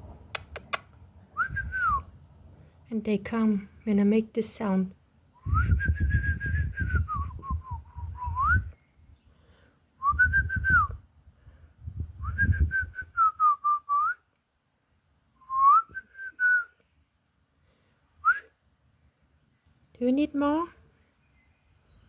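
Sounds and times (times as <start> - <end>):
person whistling: 1.4 - 2.0, 5.4 - 8.8, 10.0 - 11.0, 12.2 - 14.2, 15.4 - 16.8.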